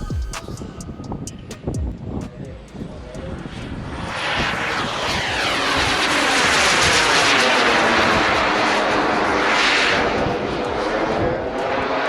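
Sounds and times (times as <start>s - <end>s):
model airplane engine flying past: 3.2s - 12.0s.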